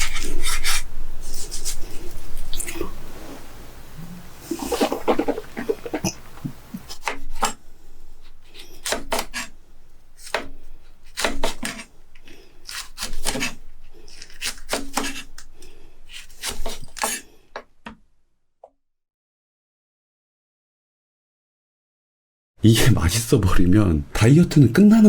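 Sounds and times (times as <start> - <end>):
knife scraping: 0.0 - 17.3.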